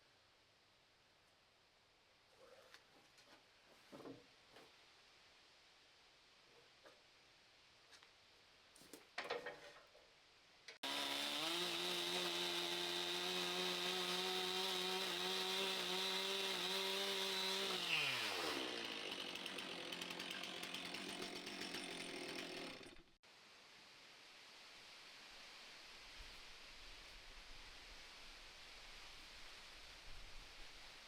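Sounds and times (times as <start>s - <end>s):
power tool motor whining: 10.8s - 23.0s
steady hiss: 23.3s - 31.0s.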